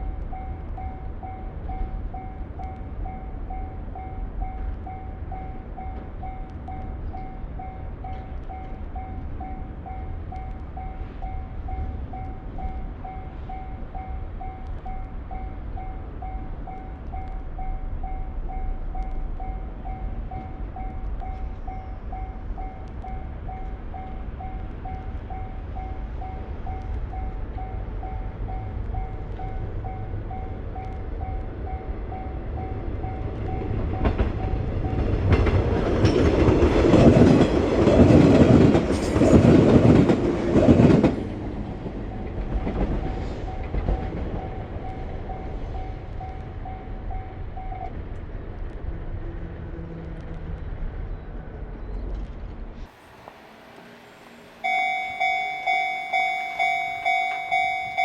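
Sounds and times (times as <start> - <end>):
train wheels clattering on rails: 0.2 - 49.0
level crossing bell ringing: 54.6 - 58.0.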